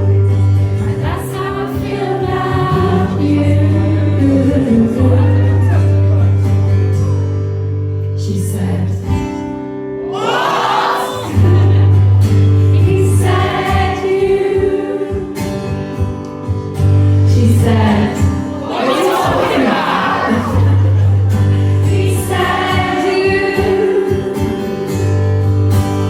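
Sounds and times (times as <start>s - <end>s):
wordless sung tones: 17.4s - 24.8s.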